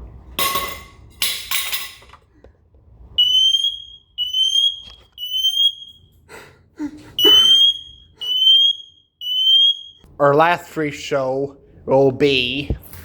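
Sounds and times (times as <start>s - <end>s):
smoke detector beeping: 3.2s - 6.1s, 7.2s - 10.1s.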